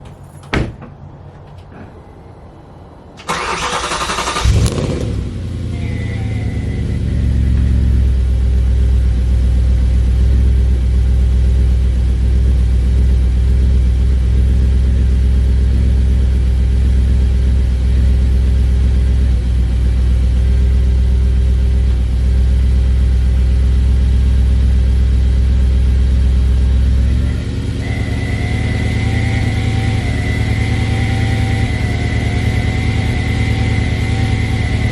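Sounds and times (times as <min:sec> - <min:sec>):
car engine idling: 0:00.0 - 0:34.9
starter motor cranking: 0:03.2 - 0:04.9.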